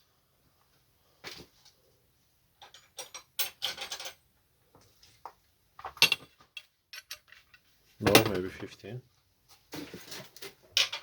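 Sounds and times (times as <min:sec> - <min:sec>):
metal tools clicking and clinking: 0:02.6 - 0:04.2, 0:06.0 - 0:08.6.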